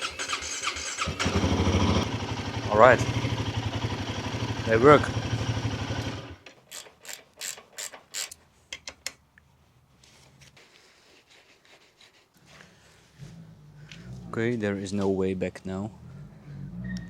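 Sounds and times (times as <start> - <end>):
motorcycle engine idling: 1.0 - 6.4
sharp ratcheting clicks: 6.5 - 9.2.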